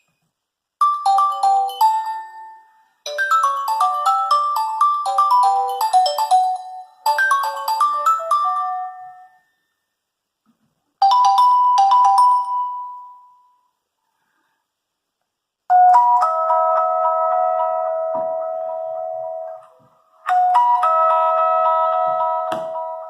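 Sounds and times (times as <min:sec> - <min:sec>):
phone ringtone melody: 0:00.8 - 0:09.5, 0:11.0 - 0:13.4, 0:15.7 - 0:19.6, 0:20.3 - 0:23.0.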